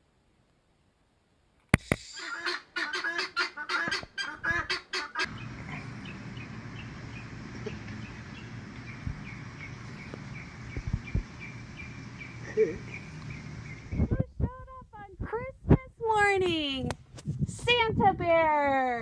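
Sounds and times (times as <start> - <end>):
goose-like bird honking: 2.2 - 9.8
steady low hum: 5.2 - 15.4.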